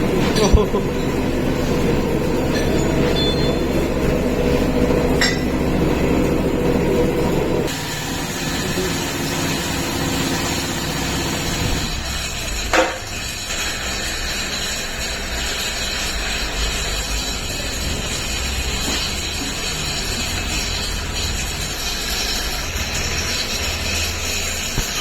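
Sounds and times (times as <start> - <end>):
diesel truck engine droning: 0.0 - 14.7, 15.4 - 25.0
short metallic clink: 2.5 - 3.6.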